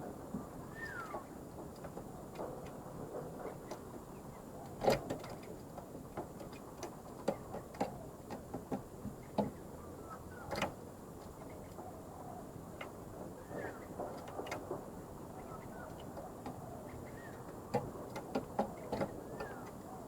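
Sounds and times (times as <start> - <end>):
dove calling softly: 15.4 - 20.0.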